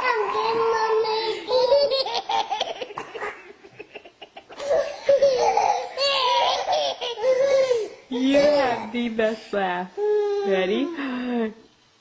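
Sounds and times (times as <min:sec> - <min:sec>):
baby laughing: 0:00.0 - 0:07.8.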